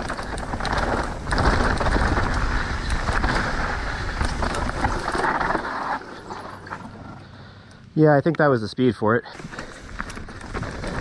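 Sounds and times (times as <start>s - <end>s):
bike rattling over dirt trail: 0.0s - 7.6s, 9.4s - 11.0s.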